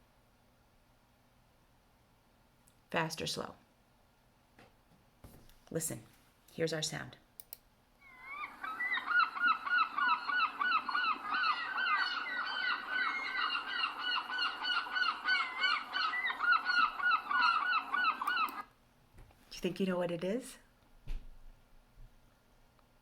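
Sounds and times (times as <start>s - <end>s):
geese honking: 8.1s - 18.6s.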